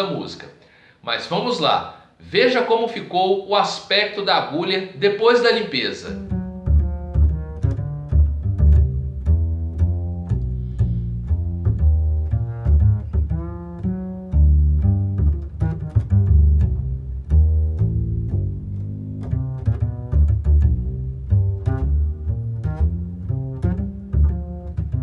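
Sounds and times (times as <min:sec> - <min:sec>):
instrumental music: 0:05.8 - 0:25.0
plucked bass line: 0:06.1 - 0:25.0.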